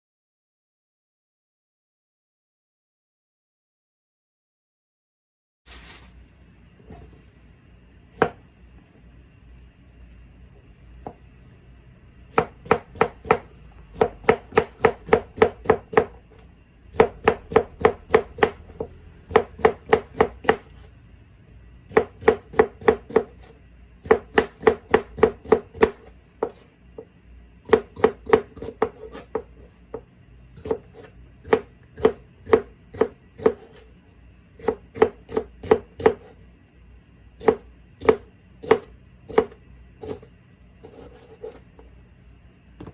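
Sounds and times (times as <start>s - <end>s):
knife chopping on cutting board: 8.2s - 8.4s, 12.3s - 16.2s, 16.9s - 20.9s, 21.9s - 26.7s, 27.7s - 30.0s, 30.6s - 33.9s, 34.6s - 36.3s, 37.4s - 41.6s.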